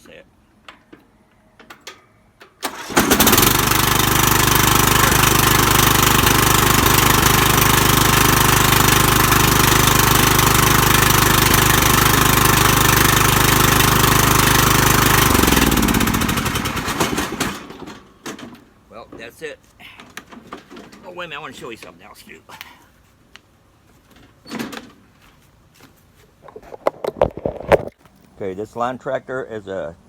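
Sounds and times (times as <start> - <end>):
mower engine starting and running: 0.8 - 19.3, 20.0 - 21.9.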